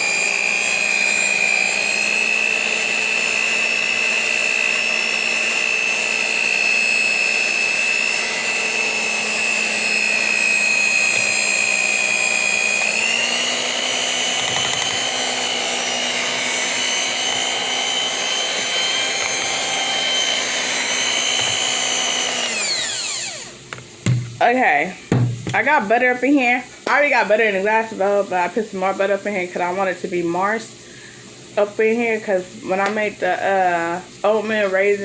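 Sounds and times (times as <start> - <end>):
electric mixer motor whining: 0.0 - 24.3.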